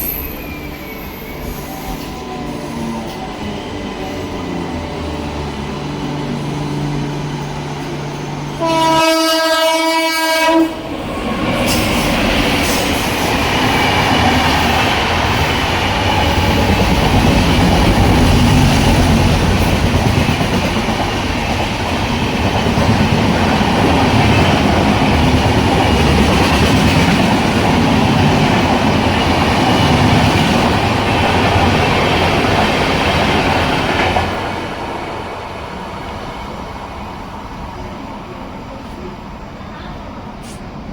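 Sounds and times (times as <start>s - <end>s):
train wheels rumbling on rails: 0.0s - 40.9s
locomotive horn blast: 8.6s - 10.9s.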